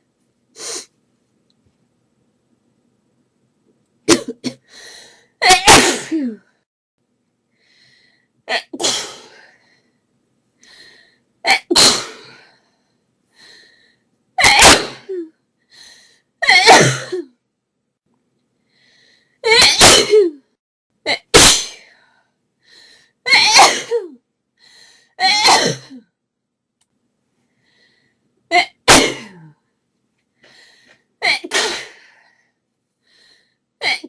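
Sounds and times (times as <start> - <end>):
woman sneezing: 5.4 - 6.4, 14.4 - 15.3, 19.5 - 20.4, 23.3 - 24.1, 25.2 - 26.0, 28.5 - 29.5, 31.2 - 32.0.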